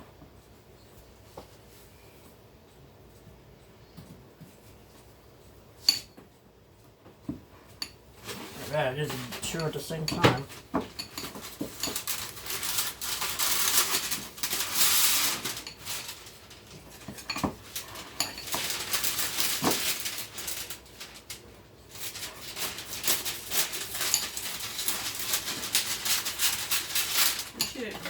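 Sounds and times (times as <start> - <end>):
utensils scraping dishes: 7.8 - 20.7, 22.0 - 28.0.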